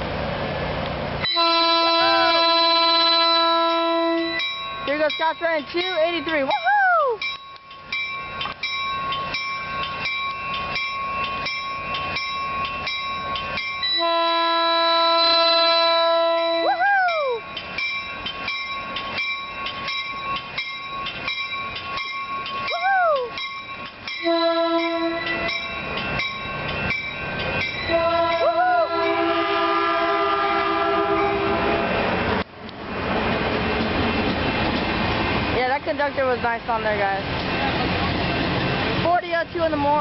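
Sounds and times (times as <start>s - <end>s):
train rumbling past: 0.0s - 40.0s
locomotive horn: 1.3s - 4.4s, 14.0s - 16.7s, 24.2s - 25.6s, 27.9s - 32.0s
rapid steady ringing bell: 4.2s - 14.0s, 17.4s - 28.6s.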